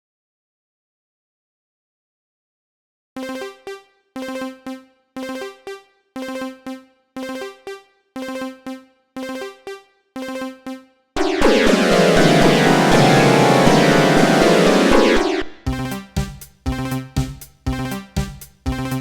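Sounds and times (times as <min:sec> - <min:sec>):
loud dense synth music: 0:11.2 - 0:15.7
two-note electronic ringtone: 0:11.2 - 0:15.7.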